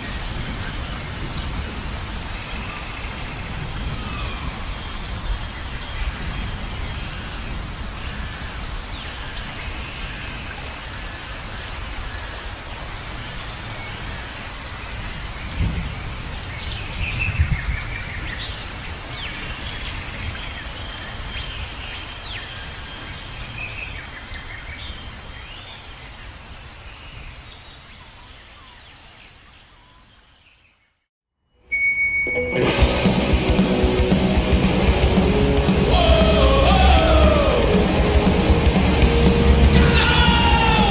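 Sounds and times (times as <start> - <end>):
steady rain: 0.0 - 30.5, 32.8 - 40.9
birds chirping: 32.7 - 40.9
thunder rolling: 32.7 - 40.9.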